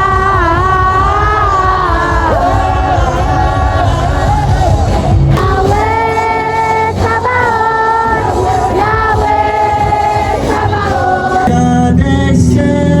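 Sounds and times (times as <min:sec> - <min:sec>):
heavy bass and chords: 0:00.0 - 0:13.0
person singing long sliding notes: 0:00.0 - 0:13.0.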